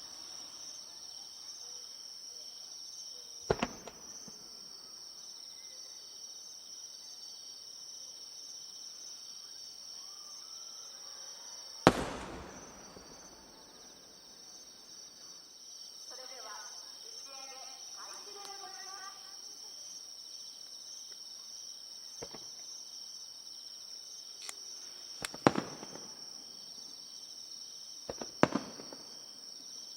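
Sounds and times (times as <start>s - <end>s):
crickets chirping: 0.0s - 29.9s
firework shells booming: 3.5s - 4.4s, 11.9s - 14.7s, 25.2s - 26.1s, 28.1s - 29.0s.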